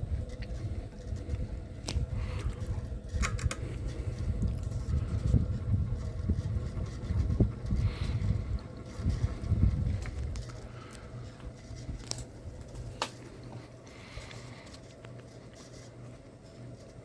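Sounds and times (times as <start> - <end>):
wind buffeting microphone: 0.0 - 13.0
ceiling fan motor hum: 0.0 - 17.0.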